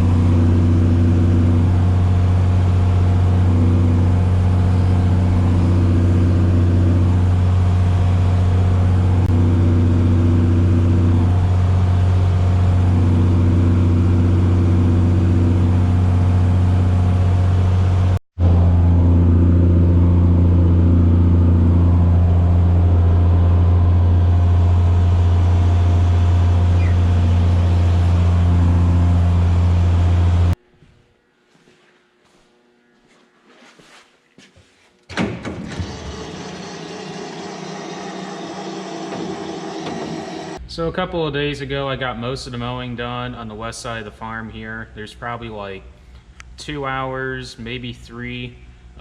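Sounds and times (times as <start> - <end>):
tractor engine droning: 0.0 - 30.6, 35.4 - 40.7.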